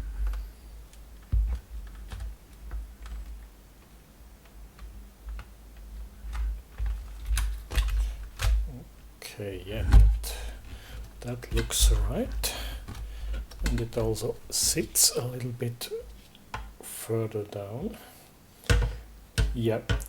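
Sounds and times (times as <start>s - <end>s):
plastic fan parts clicking and knocking: 4.4s - 8.6s, 9.8s - 15.1s, 18.7s - 20.0s.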